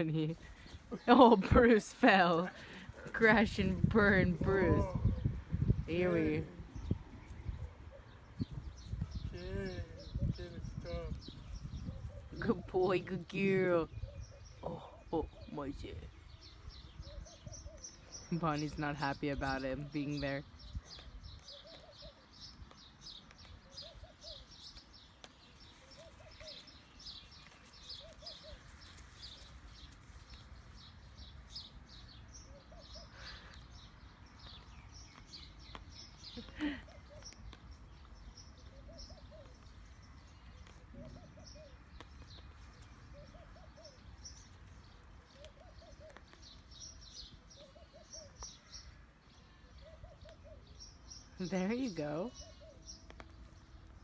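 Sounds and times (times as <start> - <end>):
small birds chirping: 0.0 - 54.0
dove cooing: 7.6 - 10.9, 21.4 - 22.3, 23.6 - 24.5, 25.7 - 26.7, 38.6 - 39.8, 40.8 - 42.0, 42.8 - 44.3, 45.2 - 46.4, 47.5 - 48.4, 49.6 - 50.8, 52.4 - 52.9.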